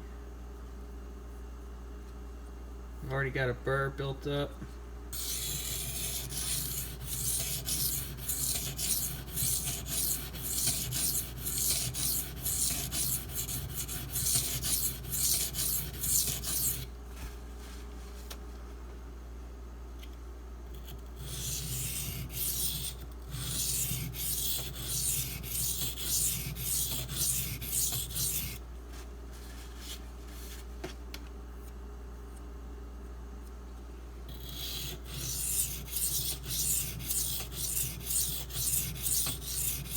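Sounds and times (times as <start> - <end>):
knife scraping on whetstone: 5.2 - 16.9, 20.8 - 28.6, 34.3 - 39.9.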